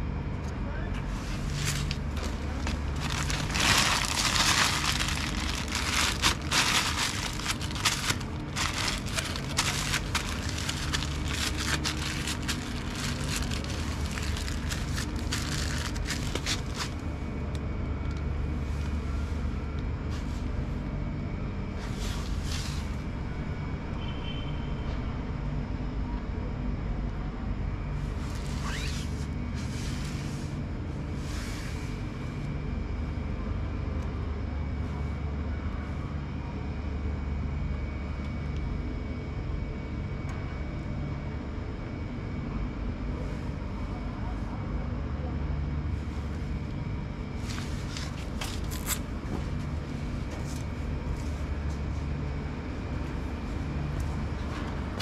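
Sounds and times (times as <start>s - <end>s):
washing machine motor hum: 1.3s - 18.5s
crackling and clicking: 1.7s - 17.0s.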